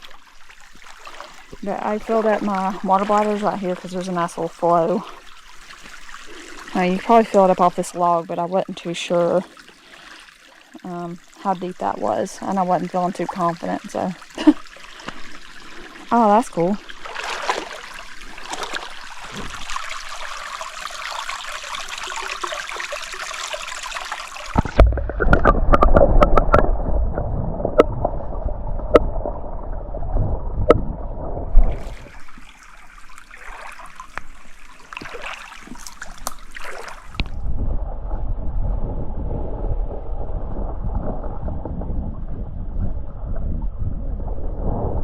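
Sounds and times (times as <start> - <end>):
stream trickling over rocks: 0.0 - 26.7, 31.5 - 37.4.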